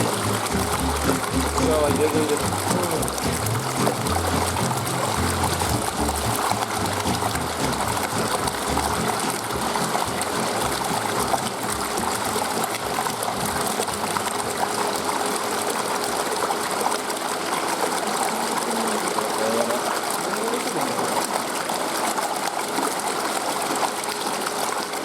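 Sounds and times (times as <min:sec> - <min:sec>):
water rushing and trickling: 0:00.0 - 0:25.0.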